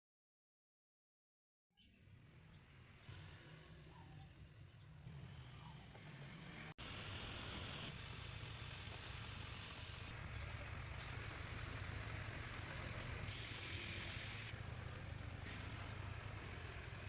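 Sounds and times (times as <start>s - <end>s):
motor humming with hiss: 3.1s - 17.0s.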